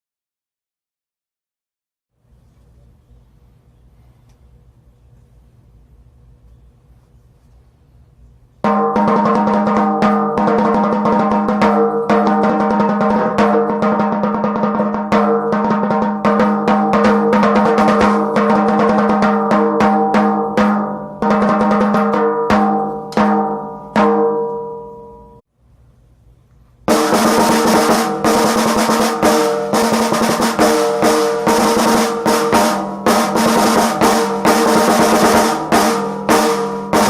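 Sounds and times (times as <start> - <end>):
snare drum rolls: 8.6 - 24.4, 26.9 - 37.0.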